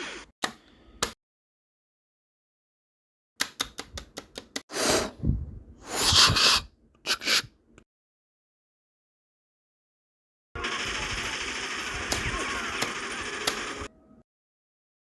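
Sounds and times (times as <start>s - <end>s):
rapid automatic gunshots: 10.6s - 13.8s.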